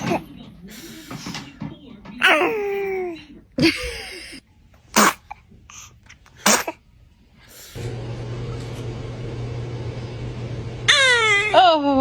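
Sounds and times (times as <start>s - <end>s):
baby sneezing: 4.9s - 5.4s, 6.4s - 6.8s.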